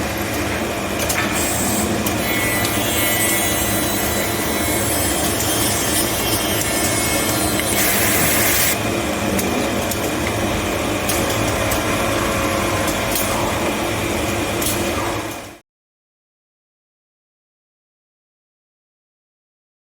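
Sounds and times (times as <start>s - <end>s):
machine mechanical hum: 0.0s - 15.6s
loud hiss: 7.8s - 8.8s.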